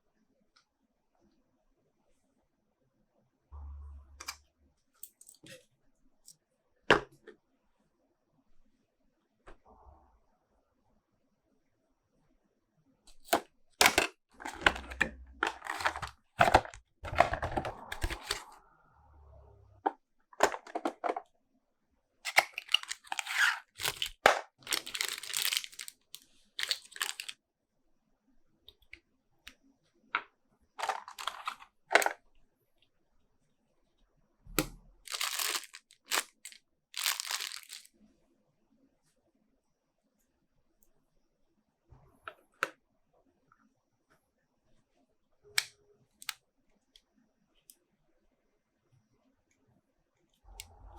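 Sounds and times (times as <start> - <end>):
packaging tearing and crinkling: 15.4 - 18.5, 22.3 - 26.0, 26.6 - 27.3, 35.1 - 37.9.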